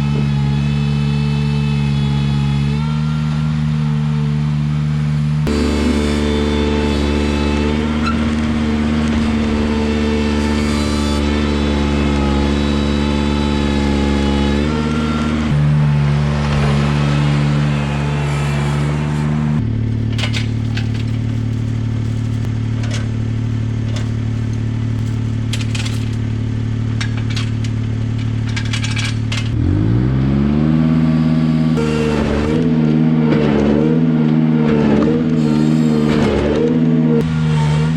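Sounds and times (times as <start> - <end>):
tractor engine running: 0.0 - 37.9
sharp metal clanks: 19.8 - 29.7.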